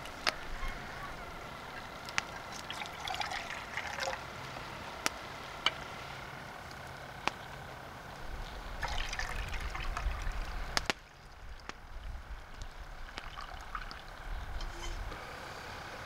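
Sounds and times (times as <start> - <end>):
hot water pouring into a cup: 1.6 - 4.3, 8.3 - 15.1.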